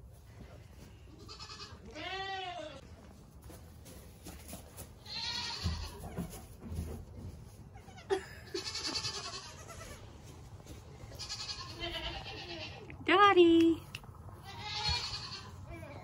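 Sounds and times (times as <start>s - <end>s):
goat kids bleating: 1.1s - 2.8s, 5.0s - 6.3s, 7.6s - 10.3s, 11.0s - 13.0s, 14.4s - 16.0s.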